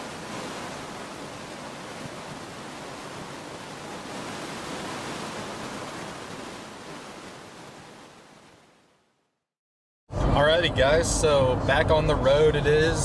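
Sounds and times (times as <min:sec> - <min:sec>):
steady outdoor rushing noise: 0:10.1 - 0:13.0.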